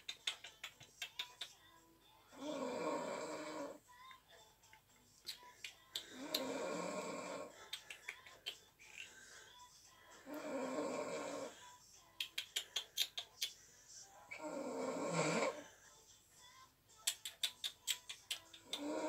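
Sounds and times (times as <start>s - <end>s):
quick clicking or smacking: 0.0s - 1.6s, 17.0s - 18.8s
person snoring: 2.3s - 3.8s, 6.0s - 7.7s, 10.2s - 11.8s, 14.3s - 15.7s, 18.6s - 19.0s.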